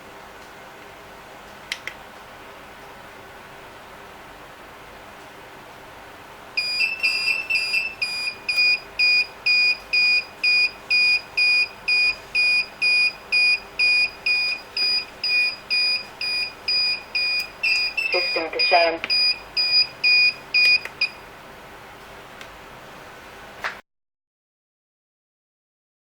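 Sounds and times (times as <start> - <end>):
faint steady hum: 0.0 - 23.1
high-pitched alarm beeping: 6.6 - 21.2.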